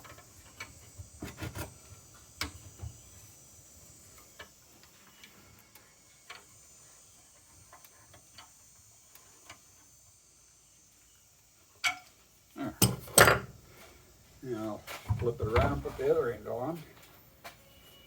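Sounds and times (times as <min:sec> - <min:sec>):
metal parts clicking and tapping: 0:12.8 - 0:13.5.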